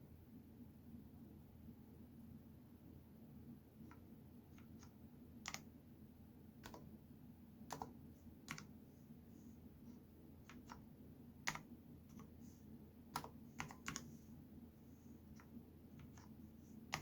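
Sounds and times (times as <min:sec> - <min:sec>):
keyboard key clicks: 0:06.6 - 0:06.9, 0:10.4 - 0:10.8, 0:15.4 - 0:17.0.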